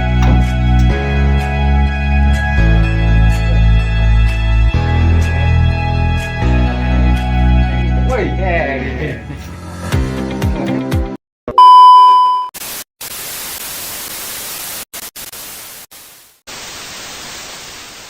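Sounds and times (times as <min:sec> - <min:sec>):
electronic beep: 0:11.6 - 0:12.5.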